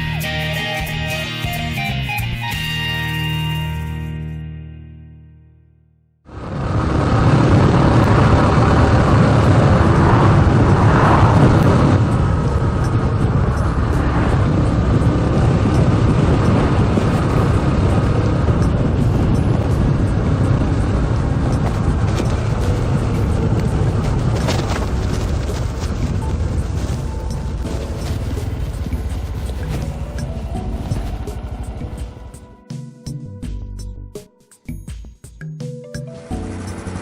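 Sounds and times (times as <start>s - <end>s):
wind rushing: 6.3s - 32.5s
motorcycle engine running: 6.3s - 32.6s, 36.3s - 37.0s
road noise: 6.3s - 32.6s, 36.2s - 37.0s.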